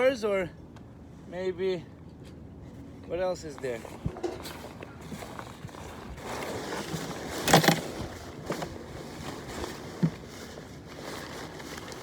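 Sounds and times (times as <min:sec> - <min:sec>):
gear knocking and rattling: 0:06.3 - 0:10.1.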